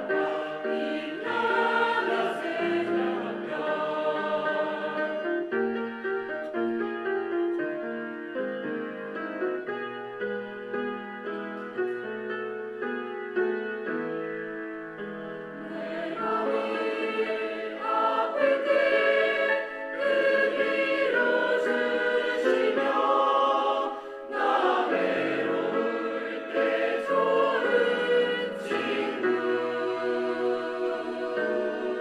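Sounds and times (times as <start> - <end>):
choir singing a hymn: 0.0 - 5.5, 15.6 - 32.0
keyboard accompaniment: 0.0 - 32.0.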